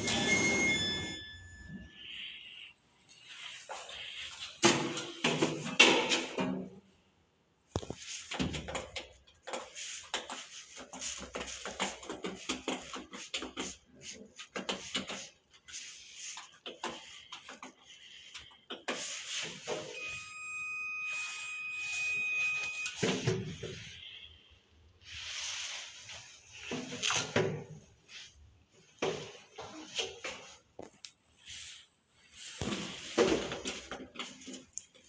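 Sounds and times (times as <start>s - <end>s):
electronic beep: 0.0s - 2.0s, 20.0s - 23.2s.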